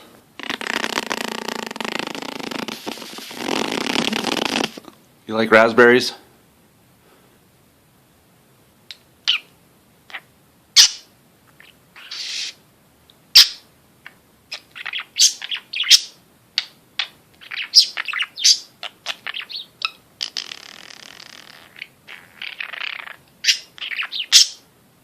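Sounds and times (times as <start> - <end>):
budgerigar chirping and chattering: 9.3 - 9.5, 10.1 - 12.6, 13.4 - 24.6.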